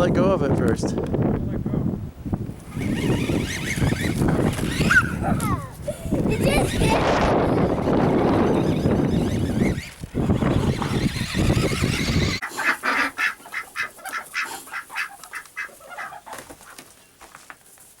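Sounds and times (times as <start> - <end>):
ducks quacking: 6.1 - 16.8.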